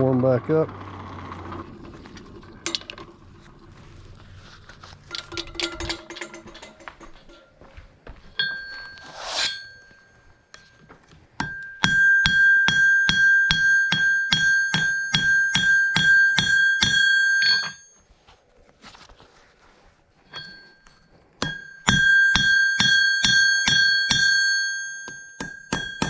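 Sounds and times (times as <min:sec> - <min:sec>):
hammer ringing on anvil: 0:08.4 - 0:10.8, 0:11.4 - 0:17.9, 0:21.4 - 0:26.0.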